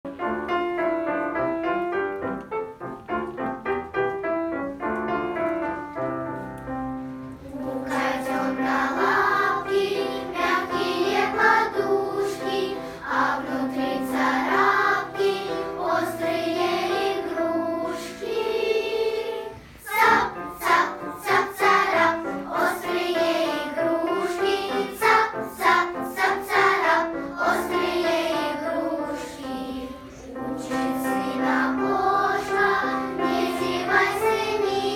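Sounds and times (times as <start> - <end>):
instrumental accompaniment: 0.1 - 34.9
children's choir singing: 6.9 - 34.9.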